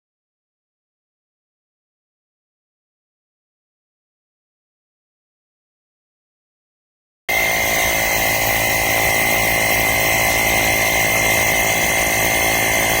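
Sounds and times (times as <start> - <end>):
air compressor buzzing: 7.3 - 13.0.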